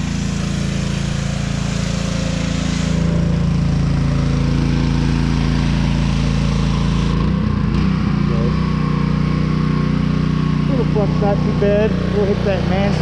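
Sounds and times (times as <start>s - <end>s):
pressure washer hiss: 0.0s - 7.2s
pressure washer engine running: 0.0s - 13.0s.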